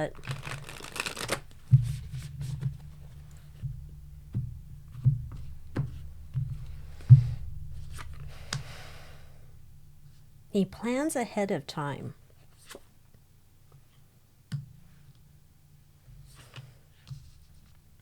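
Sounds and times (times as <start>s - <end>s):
steady low hum: 0.0s - 18.0s
cards sliding rustle: 0.2s - 2.8s.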